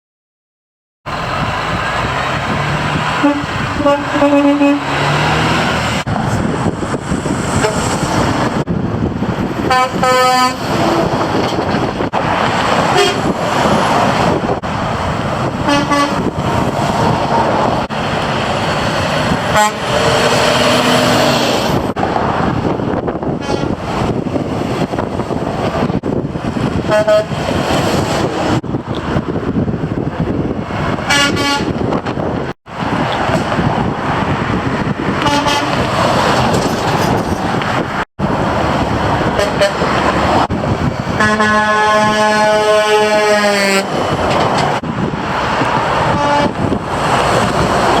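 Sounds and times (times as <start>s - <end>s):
steady traffic noise: 1.0s - 48.0s
truck engine noise: 1.0s - 48.0s
truck air horn blasts: 3.2s - 5.2s, 7.6s - 8.0s, 9.6s - 10.7s, 12.9s - 13.3s, 15.7s - 16.3s, 19.5s - 21.0s, 23.4s - 23.8s, 26.9s - 27.4s, 31.1s - 31.8s, 35.2s - 35.9s, 39.4s - 39.9s, 41.2s - 43.9s, 46.1s - 46.6s.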